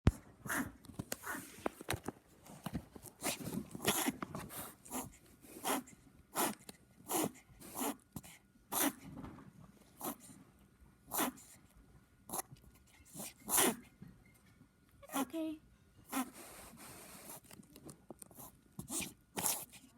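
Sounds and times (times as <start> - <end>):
puppy reverse sneezing: 4.9 - 8.0, 8.7 - 9.0, 11.1 - 11.5, 13.2 - 13.8, 16.1 - 16.5, 18.4 - 19.8.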